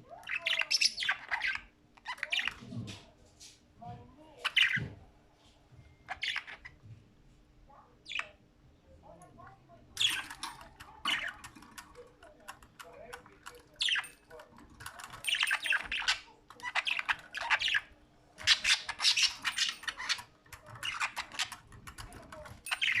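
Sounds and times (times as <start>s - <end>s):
budgerigars chattering and squawking: 0.2s - 2.6s, 6.1s - 6.8s, 10.0s - 11.9s, 13.5s - 23.0s.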